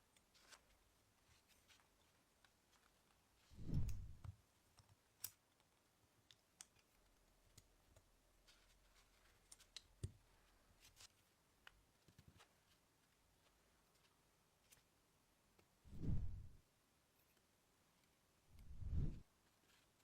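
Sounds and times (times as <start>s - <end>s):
faint clicks and taps: 4.2s - 14.9s.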